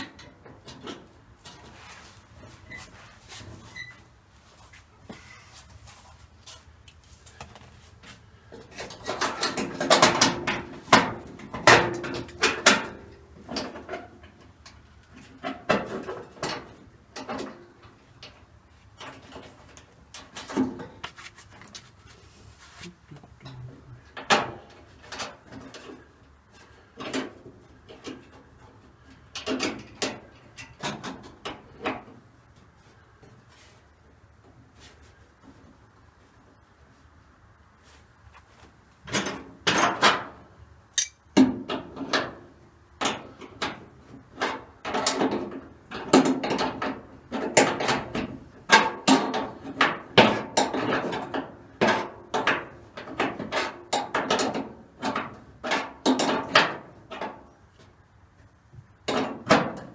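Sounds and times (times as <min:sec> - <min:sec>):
tools and parts knocking: 0:41.0 - 0:41.2.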